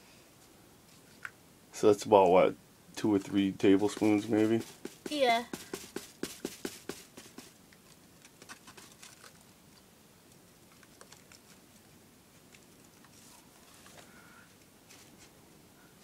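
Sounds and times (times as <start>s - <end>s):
powder ticking into plastic bottle: 3.2s - 9.4s.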